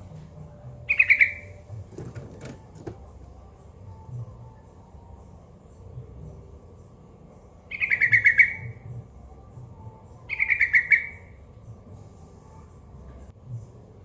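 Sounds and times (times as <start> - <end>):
bulbul chattering song: 0.8 - 1.8, 6.0 - 11.8.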